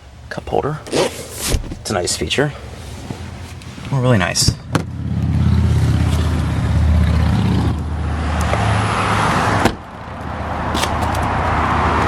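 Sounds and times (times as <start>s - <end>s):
vehicle engine running: 4.6s - 8.8s
vehicle driving past: 4.9s - 12.0s.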